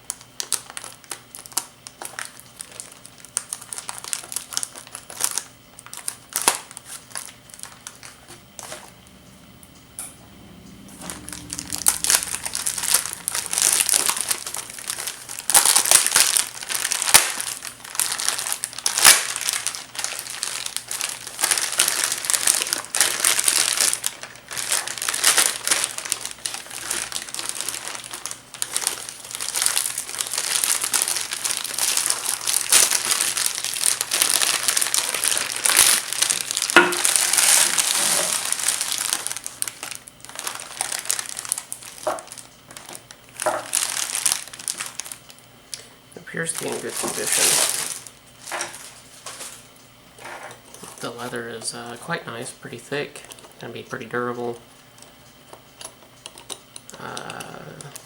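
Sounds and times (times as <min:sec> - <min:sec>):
packaging crinkling and crackling: 0:00.0 - 0:09.0, 0:11.0 - 0:58.0.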